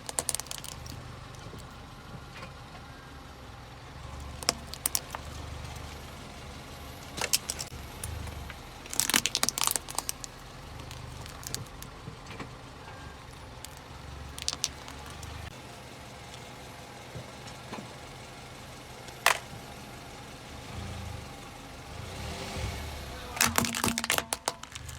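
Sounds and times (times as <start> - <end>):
objects cracking under tyres: 0.0 - 2.9, 4.0 - 15.6, 19.0 - 19.8, 23.3 - 24.9
car engine running: 0.0 - 24.9.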